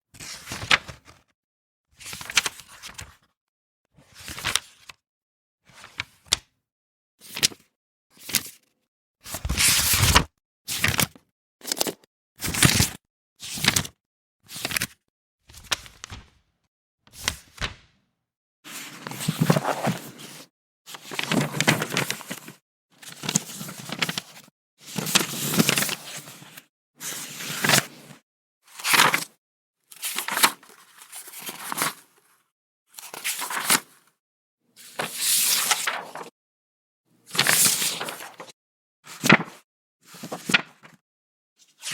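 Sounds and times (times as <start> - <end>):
book pages turning: 15.5 - 16.4, 17.1 - 17.9, 19.1 - 20.4, 29.0 - 29.2, 33.1 - 33.8, 35.0 - 36.3, 37.4 - 38.5, 39.2 - 39.5, 40.2 - 40.7.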